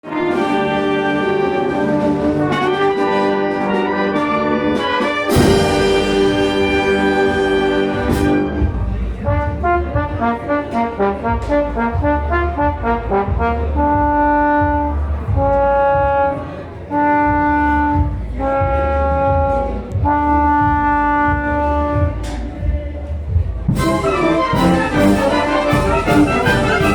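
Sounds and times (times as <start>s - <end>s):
brass band playing: 0.0s - 22.3s, 23.7s - 26.9s
cymbal crash: 5.3s - 9.2s
bass drum beats: 5.3s - 26.9s.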